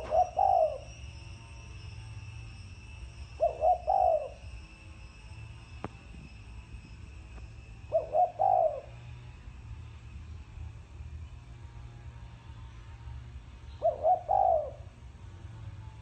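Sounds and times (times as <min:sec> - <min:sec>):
dove cooing: 0:00.0 - 0:01.0, 0:03.3 - 0:04.6, 0:07.8 - 0:09.1, 0:13.8 - 0:15.0.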